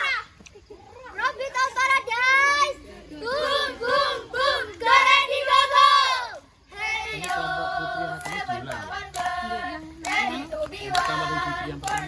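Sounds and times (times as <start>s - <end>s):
children chanting in unison: 1.8s - 12.0s
hand claps: 7.2s - 7.5s, 8.2s - 12.0s.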